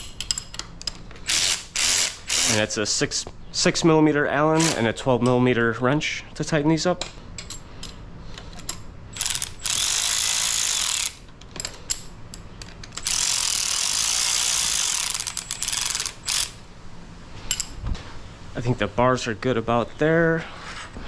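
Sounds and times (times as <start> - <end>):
ratchet wrench clicking: 0.0 - 2.6, 8.7 - 11.3, 12.9 - 16.6.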